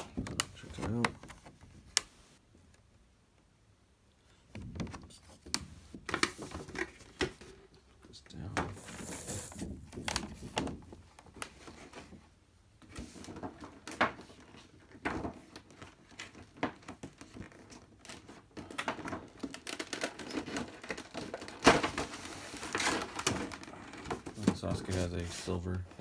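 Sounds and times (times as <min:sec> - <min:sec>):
cardboard packaging rustling: 0:00.0 - 0:02.4, 0:08.7 - 0:12.0, 0:13.2 - 0:26.0.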